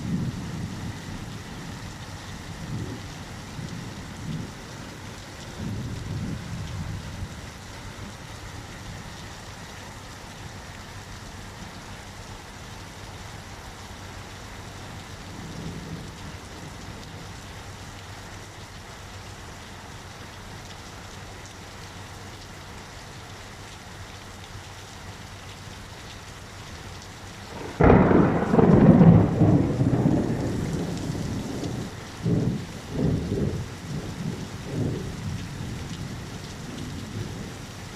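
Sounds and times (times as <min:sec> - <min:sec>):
faint low thunder rumble: 0:00.0 - 0:11.8, 0:12.8 - 0:17.7, 0:27.4 - 0:37.9
steady rain falling: 0:00.0 - 0:37.9
loud thunderclap: 0:27.6 - 0:34.1.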